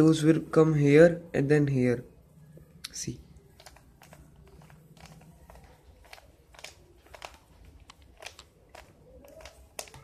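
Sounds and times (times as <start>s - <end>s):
plastic puzzle cube clicks: 3.5s - 10.0s.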